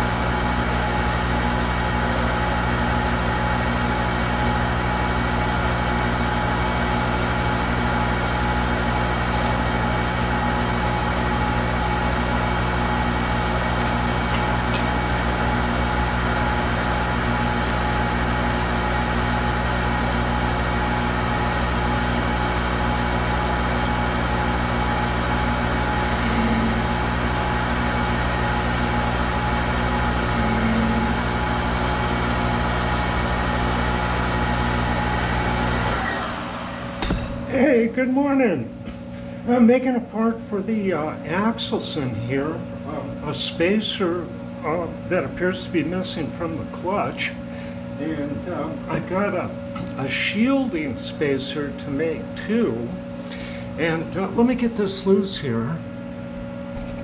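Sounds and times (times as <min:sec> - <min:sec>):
lathe humming: 0:00.0 - 0:39.8.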